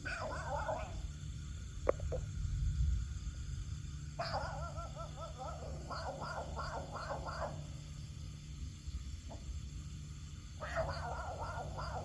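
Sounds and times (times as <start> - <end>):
animal calling: 0.0 - 1.0, 4.2 - 8.0, 10.6 - 12.0.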